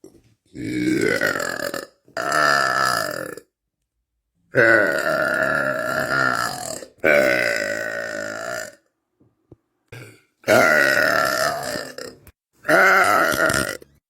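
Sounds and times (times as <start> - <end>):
woman burping: 0.6 - 3.5, 4.6 - 8.8, 9.9 - 14.0.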